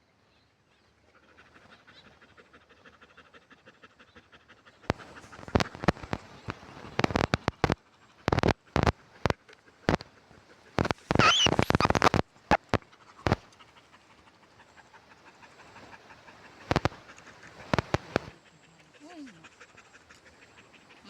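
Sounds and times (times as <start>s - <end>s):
dog panting: 1.2s - 21.0s
loud sharp thumps and clicks: 4.9s - 10.1s, 10.8s - 13.4s, 16.7s - 17.0s, 17.6s - 18.3s.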